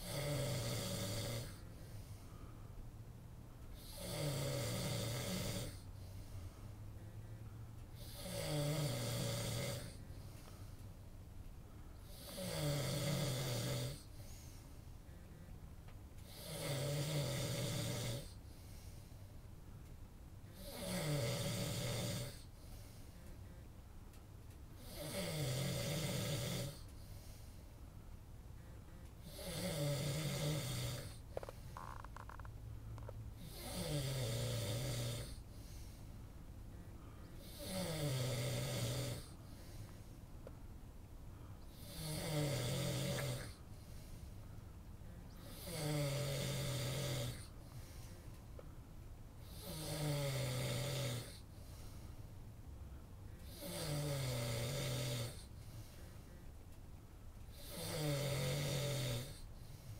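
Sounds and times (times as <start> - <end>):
man snoring: 0.0 - 2.3, 3.7 - 6.1, 7.9 - 10.3, 12.0 - 14.4, 16.2 - 18.9, 20.5 - 22.8, 24.8 - 27.4, 29.2 - 35.9, 36.7 - 39.9, 41.6 - 44.1, 45.3 - 48.1, 49.4 - 52.0, 53.4 - 56.0, 57.5 - 59.9.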